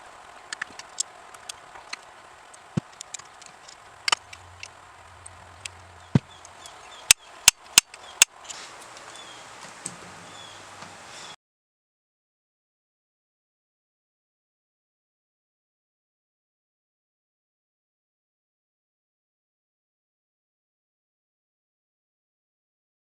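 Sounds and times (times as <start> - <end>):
small clicks and knocks: 0.5 - 10.1.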